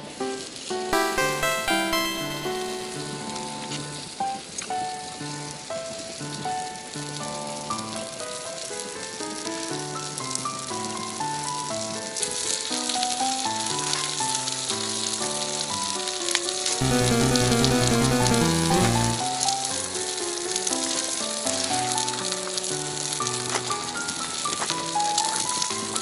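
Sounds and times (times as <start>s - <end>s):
background music with stepped melody: 0.9s - 3.6s, 16.8s - 19.4s.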